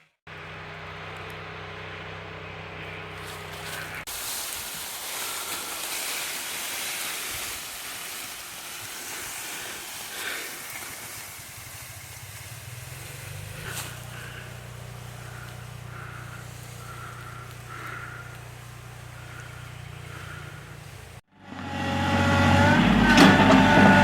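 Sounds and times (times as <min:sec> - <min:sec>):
engine running: 0:00.3 - 0:06.2, 0:08.2 - 0:24.0
steady hiss: 0:03.4 - 0:21.2.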